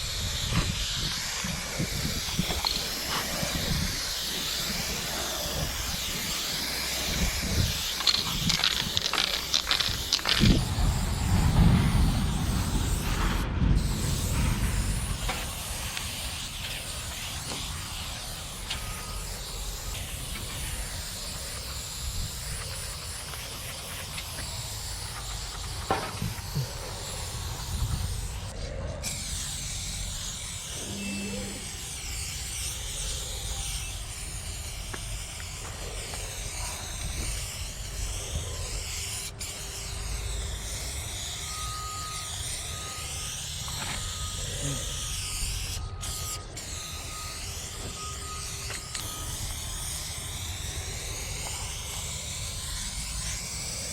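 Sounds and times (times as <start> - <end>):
spray paint can hissing: 0.0 - 53.9
low rumble: 7.1 - 17.2.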